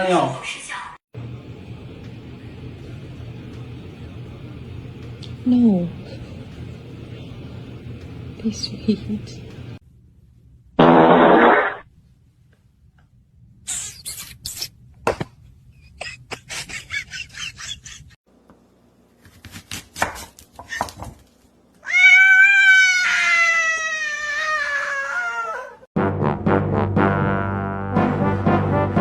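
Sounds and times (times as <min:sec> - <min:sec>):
cat meowing: 0:21.8 - 0:25.8
brass music: 0:26.0 - 0:29.0.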